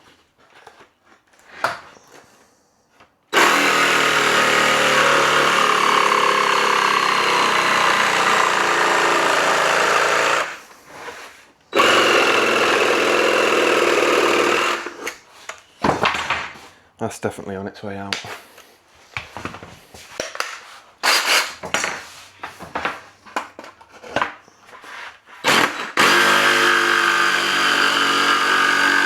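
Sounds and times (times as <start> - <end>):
cordless power tool running: 3.3 - 11.1, 11.7 - 15.2, 25.4 - 29.0.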